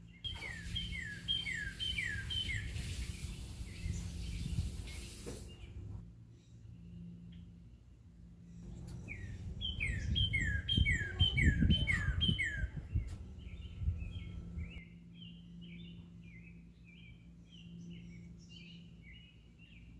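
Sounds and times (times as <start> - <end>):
songbird whistled notes: 0.2 - 5.7, 9.0 - 16.0
low rumble: 8.5 - 14.8.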